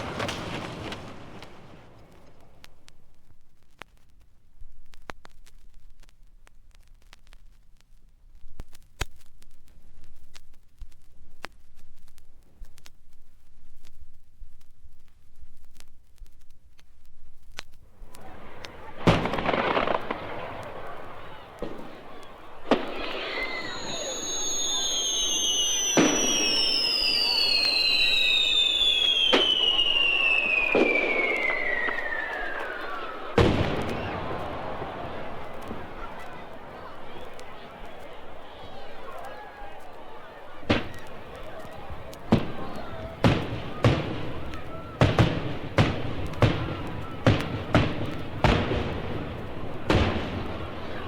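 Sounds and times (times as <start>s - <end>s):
falling firework whistles: 0.0s - 2.0s, 18.1s - 49.2s
firework bangs: 0.0s - 3.4s, 17.8s - 51.0s
rumbling noise: 0.0s - 24.2s
record surface clicks: 1.4s - 18.7s
crowd-like noisy wash: 18.0s - 51.0s.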